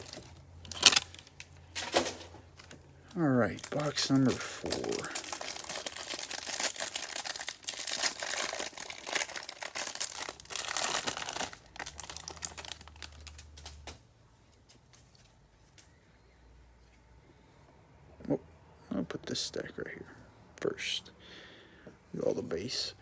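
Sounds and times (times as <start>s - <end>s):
packaging crinkling and tearing: 0.0s - 14.0s.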